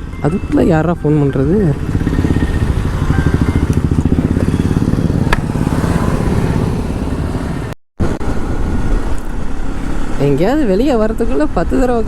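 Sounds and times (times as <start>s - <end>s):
motorcycle engine running: 0.0s - 7.8s.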